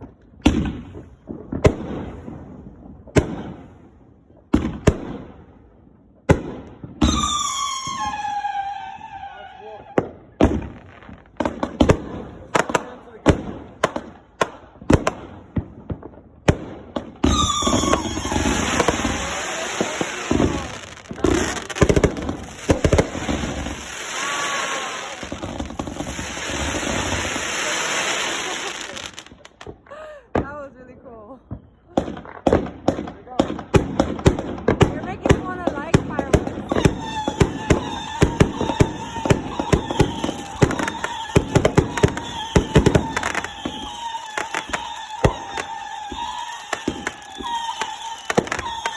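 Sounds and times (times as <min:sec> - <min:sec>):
firework bangs: 0:00.0 - 0:30.5, 0:31.5 - 0:48.9
fireworks crackling and hissing: 0:00.0 - 0:30.8, 0:31.5 - 0:48.9
firework whistles: 0:07.0 - 0:10.0, 0:17.2 - 0:29.7, 0:36.6 - 0:48.9.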